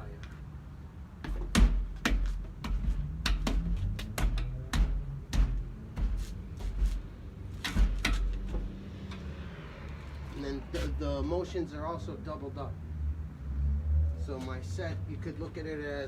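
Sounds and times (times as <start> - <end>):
hands slapping and knocking: 1.3 - 7.0.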